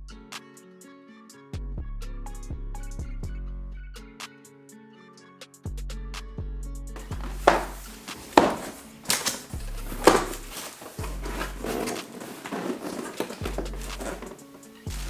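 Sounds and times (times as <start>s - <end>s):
background music with bass: 1.6s - 4.2s, 5.7s - 7.9s, 13.5s - 15.0s
knocks handling packaging: 7.0s - 15.0s.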